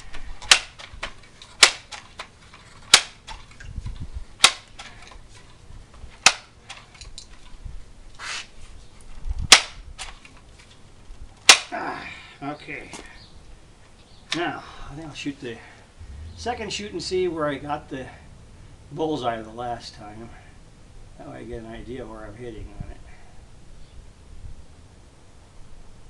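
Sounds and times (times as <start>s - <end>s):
pellet gun pump clacks: 0.1s - 3.7s.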